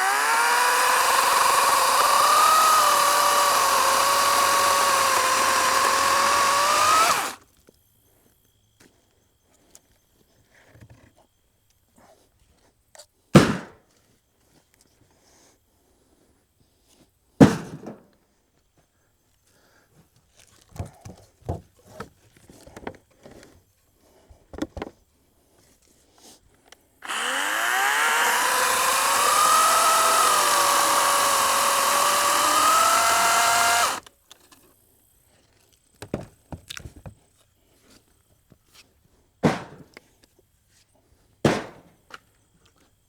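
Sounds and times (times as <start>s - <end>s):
electric chainsaw whine: 0.0s - 7.4s, 27.0s - 34.1s.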